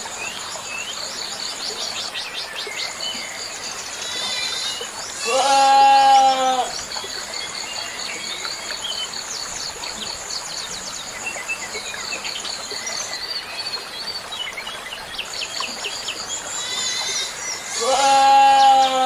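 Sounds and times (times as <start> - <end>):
high-pitched insect trill: 3.5 - 5.4.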